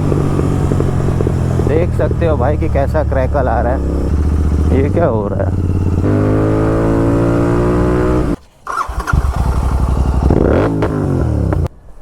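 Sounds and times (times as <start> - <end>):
exhaust crackles and pops: 0.0 - 6.6
motorcycle engine revving: 0.0 - 11.7.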